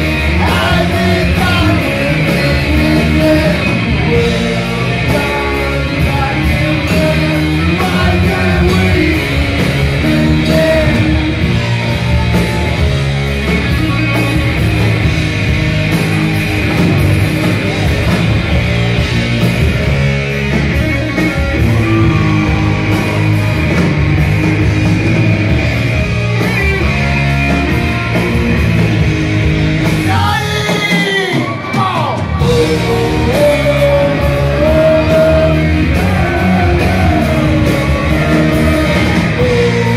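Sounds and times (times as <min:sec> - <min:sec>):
heavy metal band playing: 0:00.0 - 0:39.9
person singing: 0:00.1 - 0:11.2, 0:30.0 - 0:39.9
wailing rising and falling notes: 0:20.5 - 0:28.6.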